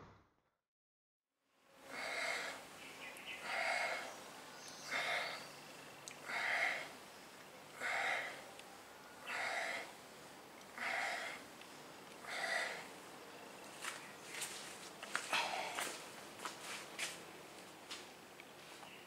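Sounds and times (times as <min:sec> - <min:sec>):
heavy breathing: 0:03.4 - 0:04.2, 0:04.9 - 0:05.5, 0:07.8 - 0:08.5, 0:09.2 - 0:10.0, 0:10.7 - 0:11.5, 0:12.2 - 0:12.9, 0:15.1 - 0:16.0.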